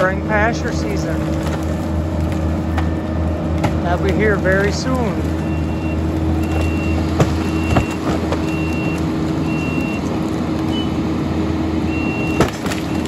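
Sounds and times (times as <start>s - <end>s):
loader engine running: 0.0s - 13.0s
reverse alarm beeping: 5.4s - 10.0s, 10.7s - 11.0s, 11.9s - 13.0s.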